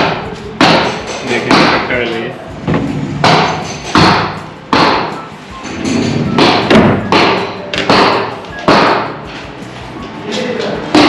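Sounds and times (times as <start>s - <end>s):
hammer blows ringing: 0.0s - 2.1s, 2.7s - 9.3s.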